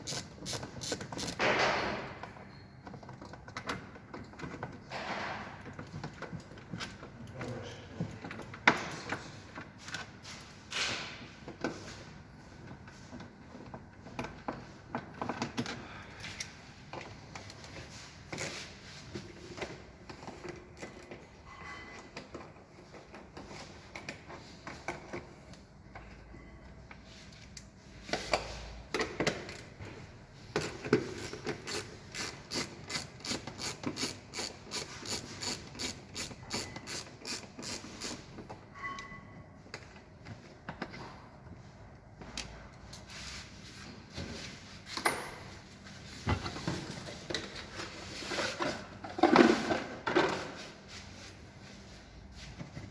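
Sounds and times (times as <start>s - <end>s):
ratchet wrench clicks: 0.0s - 1.4s, 30.6s - 38.2s
knocks and scraping of tools: 0.0s - 52.9s.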